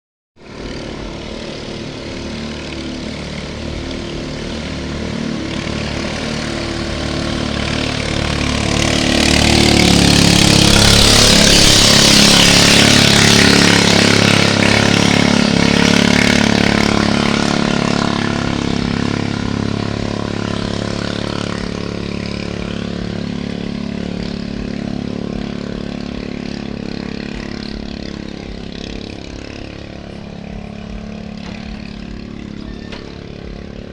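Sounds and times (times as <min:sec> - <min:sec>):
motorboat engine running: 0:00.4 - 0:33.9.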